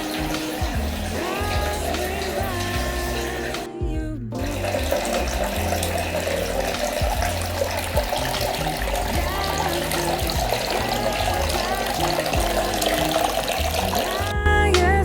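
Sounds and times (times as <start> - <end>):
background music: 0.0 - 15.0
water running into a bath: 4.6 - 14.1.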